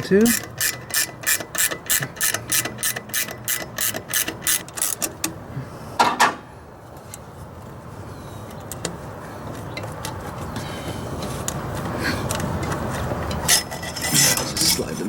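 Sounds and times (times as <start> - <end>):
ratcheting wrench clicking: 0.0 - 5.3.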